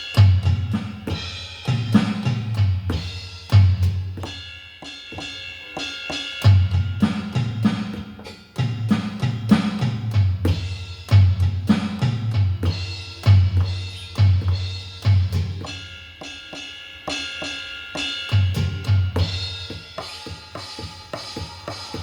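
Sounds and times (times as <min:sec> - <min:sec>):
cymbal ringing: 0:00.0 - 0:22.0
bass drum thumps: 0:00.2 - 0:04.4, 0:06.5 - 0:15.8
snare and tom hits: 0:06.1 - 0:15.8.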